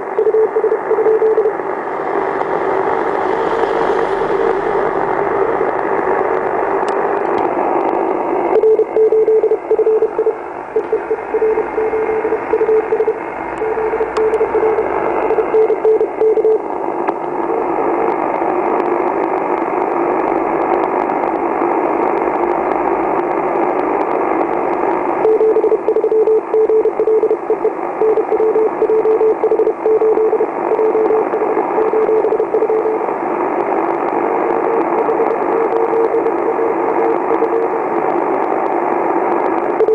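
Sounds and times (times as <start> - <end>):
morse code tone: 0.0 - 7.4, 8.4 - 16.7, 25.1 - 33.2, 34.4 - 37.9, 39.7 - 39.9
radio hiss and buzz: 0.0 - 39.9.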